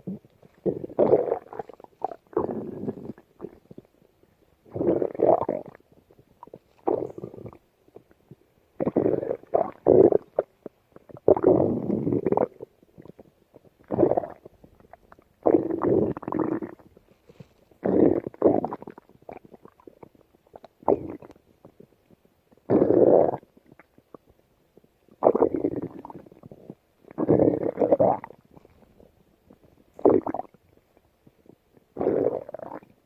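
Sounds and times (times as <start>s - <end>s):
stomach growling and gurgling: 0.0s - 33.0s.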